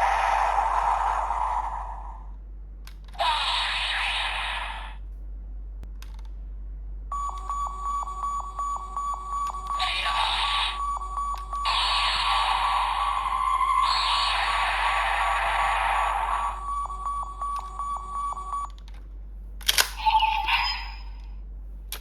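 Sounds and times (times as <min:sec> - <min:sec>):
toy speaker sound effects: 0:03.2 - 0:05.0, 0:09.5 - 0:17.7, 0:19.9 - 0:21.2
high pulsing beep: 0:07.2 - 0:14.8, 0:15.8 - 0:18.7.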